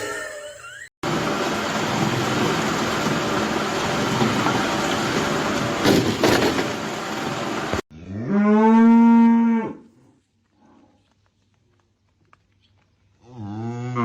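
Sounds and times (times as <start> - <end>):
loud rush of noise: 1.0 - 7.8.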